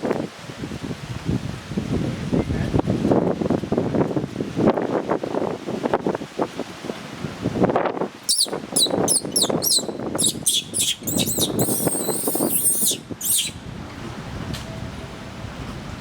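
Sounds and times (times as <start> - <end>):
small animal squeaking: 8.3 - 13.6.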